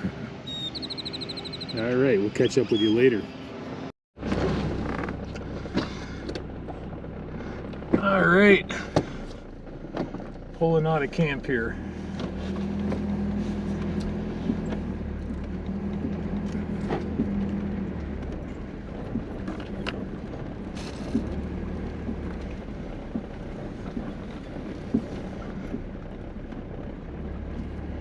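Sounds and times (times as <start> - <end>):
motorhome engine running: 0.0 - 28.0
sharp clicks and rattles: 13.8 - 27.9.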